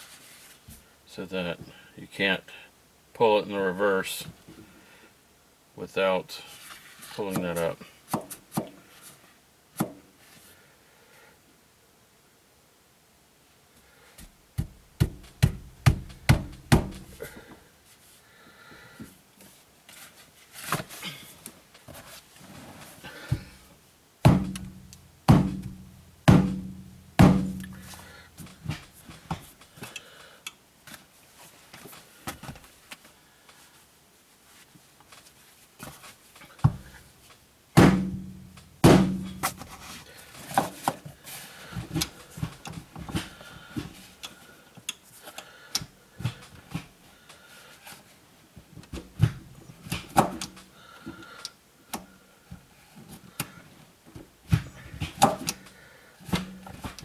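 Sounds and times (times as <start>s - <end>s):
heavy metallic thunks: 14.6s - 17.2s, 24.3s - 28.8s, 37.8s - 39.7s.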